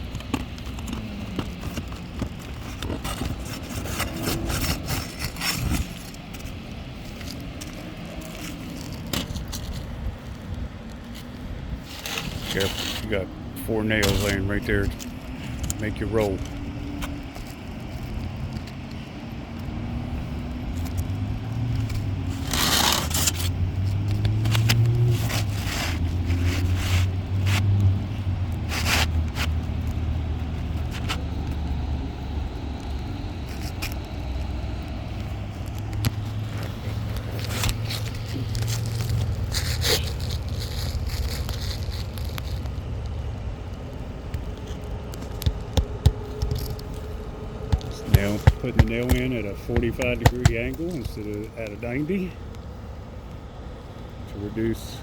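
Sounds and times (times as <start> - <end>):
tools scraping roof shingles: 0.0 - 9.9, 11.8 - 16.5, 21.9 - 23.6, 44.4 - 51.4
sharp knocks: 47.7 - 50.8.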